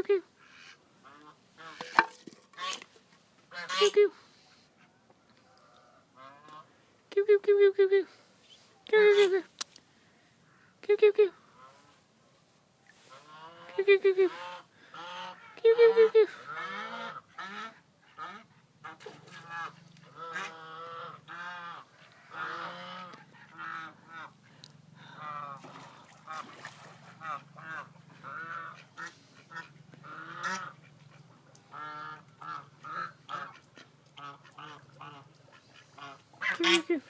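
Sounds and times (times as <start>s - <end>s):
ducks quacking: 0.4s - 2.8s, 13.0s - 37.0s
geese honking: 13.0s - 24.4s, 27.1s - 37.0s.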